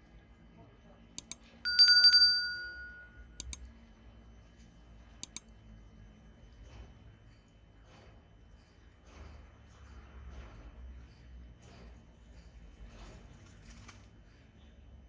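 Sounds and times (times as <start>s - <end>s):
sharp clicks in pairs: 1.2s - 1.4s, 3.4s - 3.6s, 5.2s - 5.5s
bright metallic ringing strikes: 1.7s - 3.4s.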